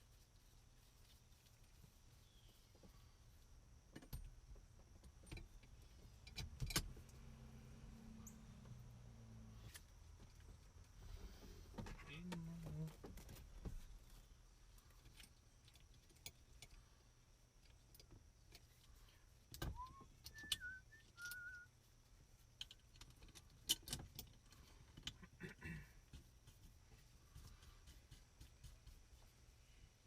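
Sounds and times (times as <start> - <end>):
short high chirp: 19.8 - 21.7.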